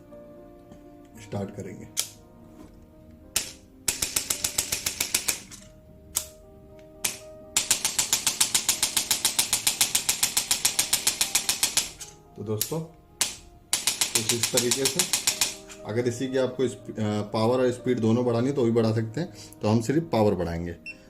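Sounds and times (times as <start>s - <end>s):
adjusting gun piston clacking: 7.0s - 15.8s.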